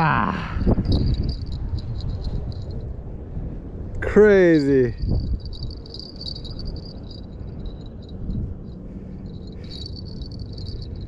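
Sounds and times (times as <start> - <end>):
low rumble: 0.0 - 11.0
high-pitched chirring: 0.8 - 2.8, 5.0 - 11.0.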